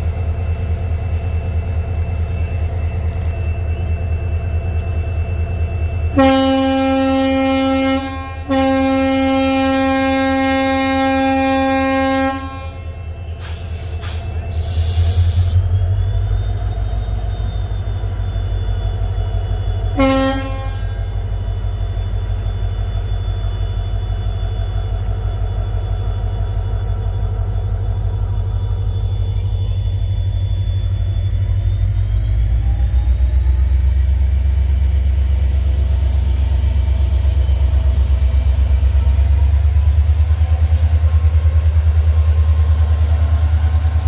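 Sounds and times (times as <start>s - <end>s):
locomotive engine humming: 0.0s - 44.0s
locomotive air horn blasts: 6.1s - 12.9s, 19.9s - 21.0s
burst of hiss: 13.4s - 15.6s.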